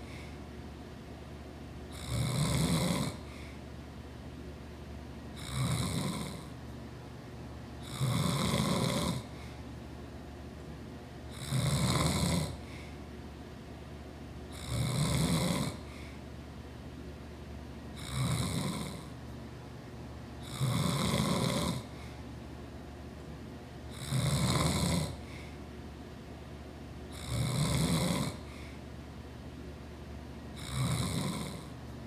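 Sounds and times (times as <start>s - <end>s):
man snoring loudly: 1.9s - 3.3s, 5.4s - 6.5s, 7.8s - 9.3s, 11.3s - 12.6s, 14.5s - 15.9s, 18.0s - 19.1s, 20.4s - 21.9s, 23.9s - 25.2s, 27.1s - 28.5s, 30.6s - 31.7s.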